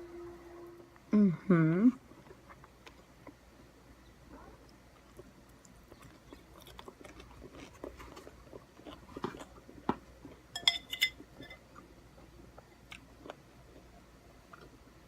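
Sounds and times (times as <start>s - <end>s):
chewing and biting food: 4.3s - 10.5s.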